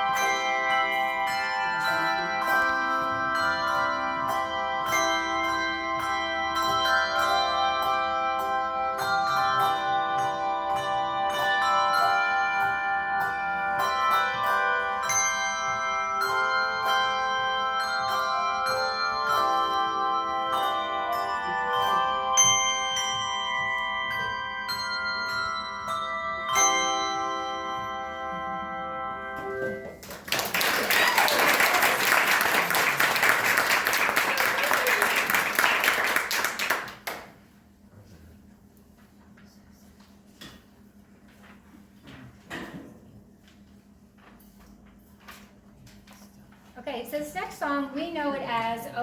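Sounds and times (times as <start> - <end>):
handbell choir playing a hymn: 0.0 - 30.0
applause: 30.0 - 37.4.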